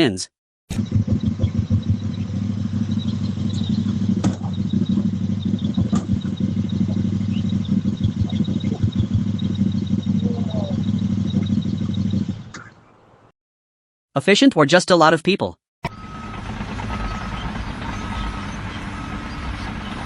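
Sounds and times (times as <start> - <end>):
engine running steadily: 0.7 - 12.7, 15.9 - 20.0
sharp knocks and clatter: 3.5 - 7.2.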